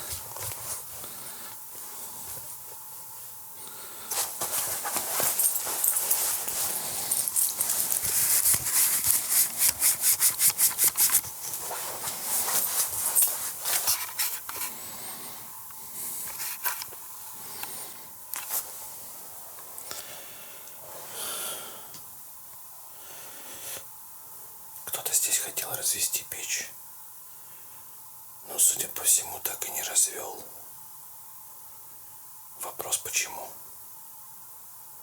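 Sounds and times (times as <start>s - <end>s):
close rustling and scraping: 0.0s - 1.0s, 4.1s - 14.7s, 16.3s - 17.0s
even scratching strokes: 4.1s - 14.4s.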